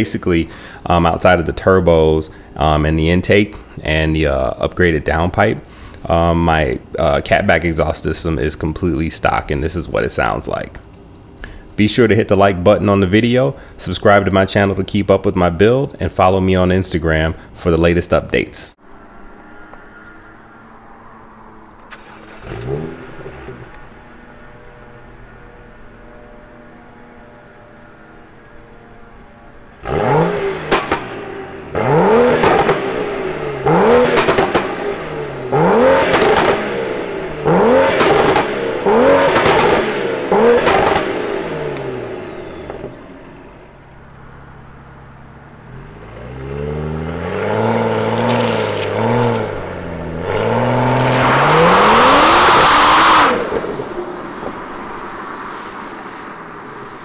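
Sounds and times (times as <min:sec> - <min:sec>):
exhaust cracks: 0:00.0 - 0:28.5, 0:29.6 - 0:57.0
car engine revving: 0:18.8 - 0:57.0.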